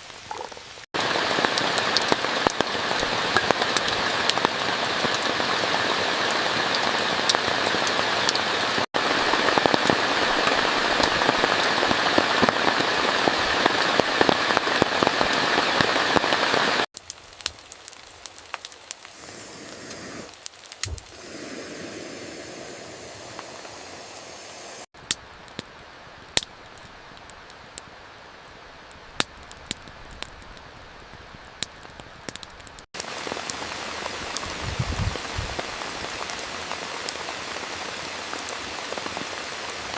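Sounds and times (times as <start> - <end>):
heavy rain falling: 0.0 - 24.9, 33.0 - 39.9
sharp clicks: 20.6 - 21.2
low thump: 20.8 - 21.2.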